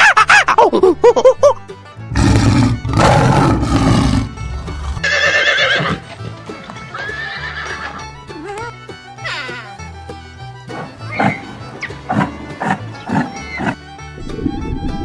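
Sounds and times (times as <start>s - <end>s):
light background music: 0.0s - 15.0s
horse whinnying: 2.1s - 6.0s, 6.9s - 8.1s.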